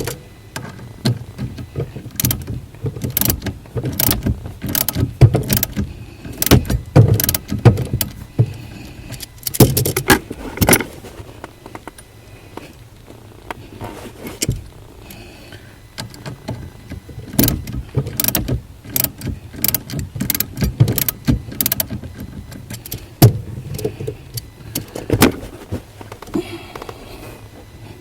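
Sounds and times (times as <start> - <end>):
metallic clicks and knocks: 0.0 - 10.8, 16.0 - 25.4.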